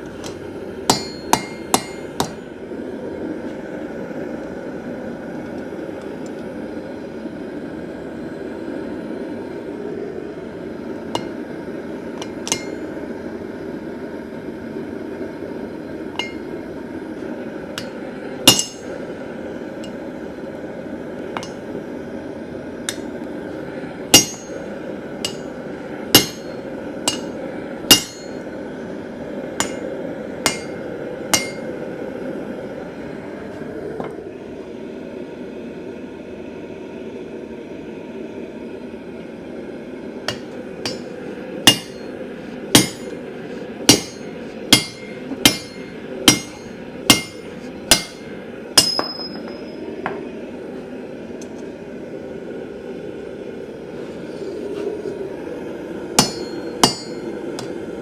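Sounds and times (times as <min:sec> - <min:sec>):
hammer striking steel on anvil: 0:00.2 - 0:02.5, 0:11.2 - 0:11.5, 0:12.2 - 0:13.0, 0:16.2 - 0:16.6, 0:17.8 - 0:19.1, 0:21.4 - 0:21.7, 0:22.9 - 0:23.2, 0:24.1 - 0:28.5, 0:29.6 - 0:31.9, 0:40.3 - 0:50.3, 0:56.2 - 0:58.0.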